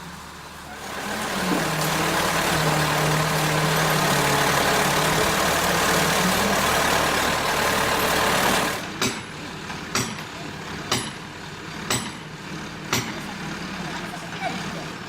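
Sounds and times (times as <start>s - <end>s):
chainsaw engine running at high speed: 0.7s - 8.9s.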